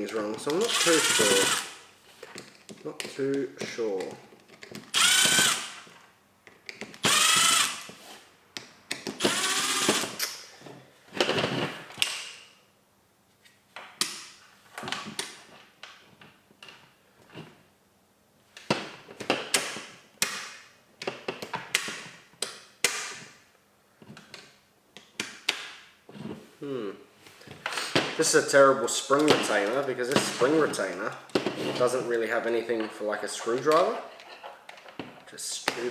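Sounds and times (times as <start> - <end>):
electric screwdriver whirring: 0.6 - 1.8, 4.9 - 6.0, 7.0 - 8.0, 9.2 - 10.2.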